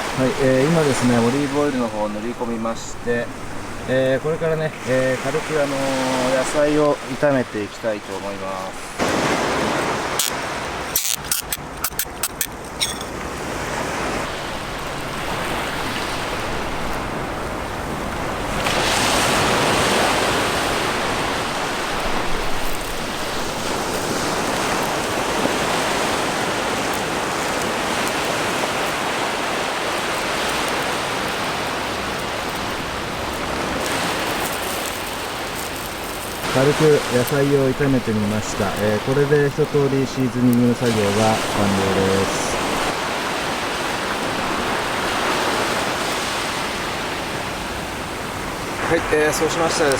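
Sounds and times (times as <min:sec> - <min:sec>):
sharp clicks: 0:11.0 - 0:13.0.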